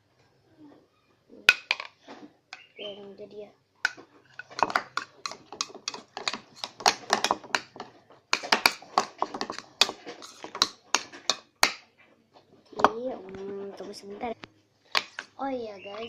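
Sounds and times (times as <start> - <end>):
spoon tapping against bowl: 4.4 - 7.8.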